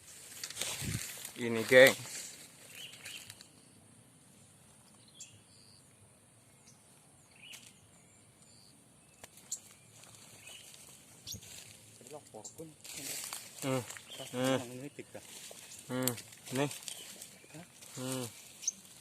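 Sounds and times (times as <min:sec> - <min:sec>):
bird chirps: 0:02.6 - 0:03.8, 0:04.8 - 0:12.8, 0:13.6 - 0:19.0.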